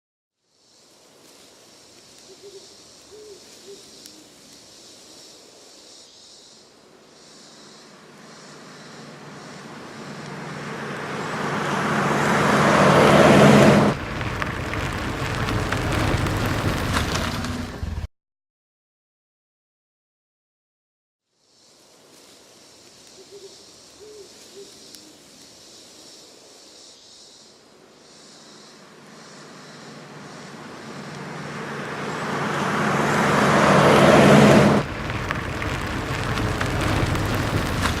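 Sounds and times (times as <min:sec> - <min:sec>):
car engine and road noise: 0:06.8 - 0:18.1, 0:27.7 - 0:38.0
low engine rumble: 0:08.0 - 0:18.1, 0:28.9 - 0:38.0.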